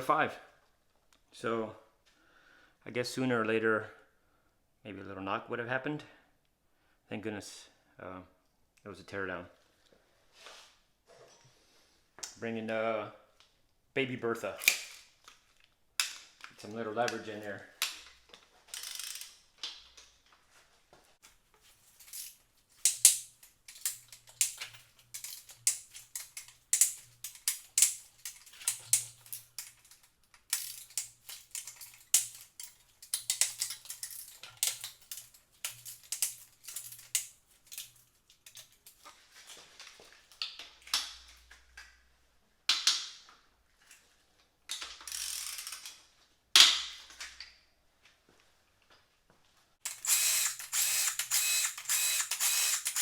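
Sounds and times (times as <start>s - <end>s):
ratchet wrench clicking: 18.8s - 19.3s, 30.5s - 34.8s, 45.1s - 45.9s, 49.9s - 53.0s.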